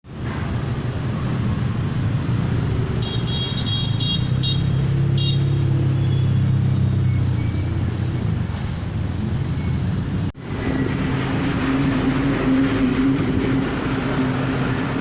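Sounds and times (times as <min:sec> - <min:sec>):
short high-pitched beeps: 0:06.0 - 0:10.4.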